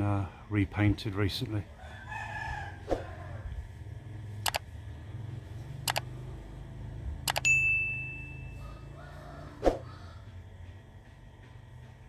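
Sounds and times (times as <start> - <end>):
low steady hum: 0.0 - 12.0
sharp double clicks: 4.4 - 4.6, 5.9 - 6.1, 7.3 - 7.5.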